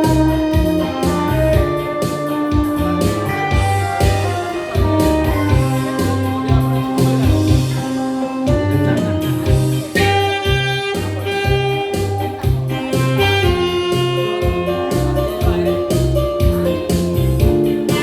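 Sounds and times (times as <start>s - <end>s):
saxophone playing slow melody: 0.0s - 16.0s
bass line with steady beat: 0.0s - 18.0s
guitar: 0.0s - 18.0s.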